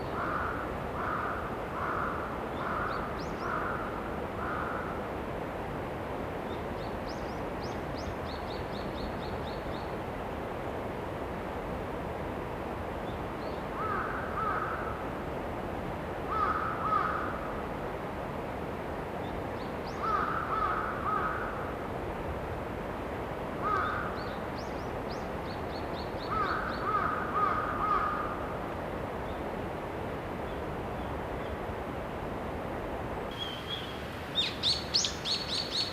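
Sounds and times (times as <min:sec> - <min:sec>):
outdoor hiss: 0:00.0 - 0:35.9
crow cawing: 0:00.2 - 0:04.9, 0:13.8 - 0:14.9, 0:16.3 - 0:17.3, 0:20.0 - 0:21.6, 0:23.6 - 0:24.2, 0:26.3 - 0:28.4
small bird calling: 0:33.3 - 0:35.9.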